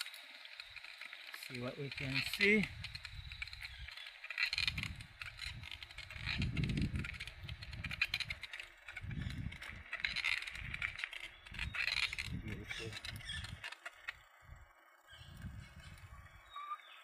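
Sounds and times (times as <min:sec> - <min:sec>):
bicycle rattling and ticking: 0:00.0 - 0:17.0
low rumbles: 0:04.6 - 0:13.6.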